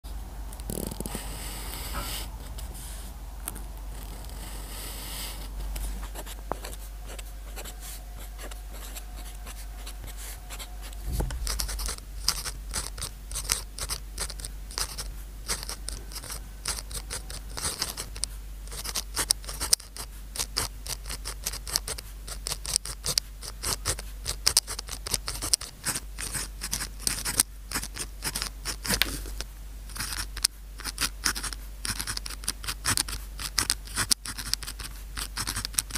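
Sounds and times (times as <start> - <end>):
steady low hum: 0.0 - 35.9
pen scratching on paper: 6.0 - 35.9.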